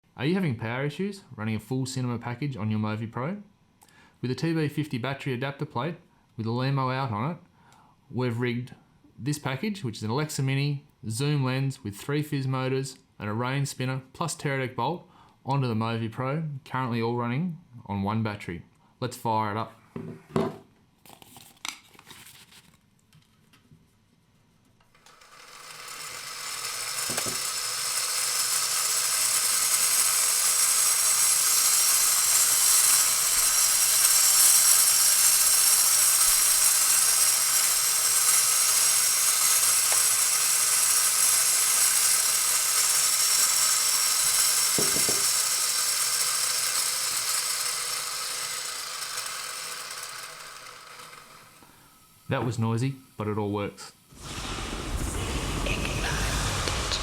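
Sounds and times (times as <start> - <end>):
motor high-pitched whir: 25.1 - 51.8, 54.1 - 57.0
power-on clicks: 54.1 - 57.0.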